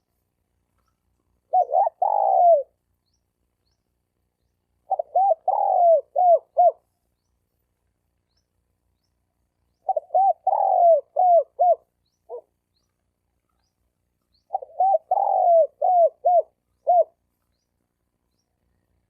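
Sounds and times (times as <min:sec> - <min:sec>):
dove cooing: 0:01.4 - 0:02.8, 0:04.8 - 0:07.0, 0:09.8 - 0:12.5, 0:14.4 - 0:17.3.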